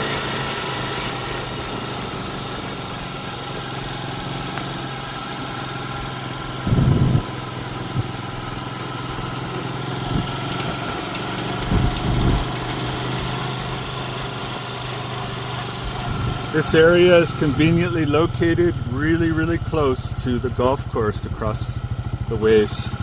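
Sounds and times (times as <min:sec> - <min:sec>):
engine idling: 0:00.0 - 0:23.0
rapid high ticking: 0:10.3 - 0:13.6.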